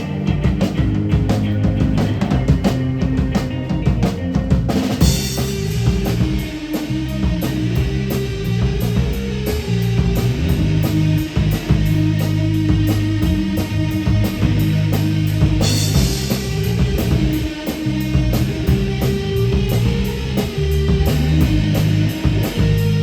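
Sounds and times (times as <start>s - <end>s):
drum kit beat: 0.0s - 23.0s
rock band playing: 0.0s - 23.0s.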